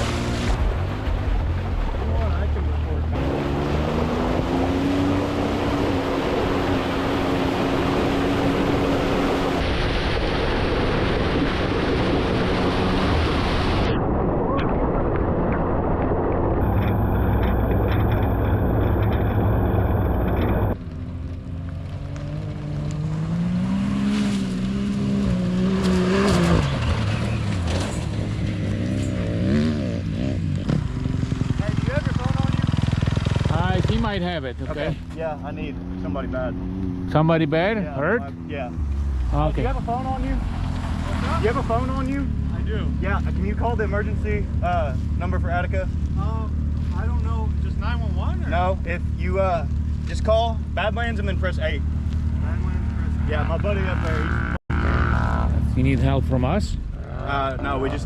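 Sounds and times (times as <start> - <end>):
vehicle engine running: 16.5 - 23.6, 30.2 - 56.9.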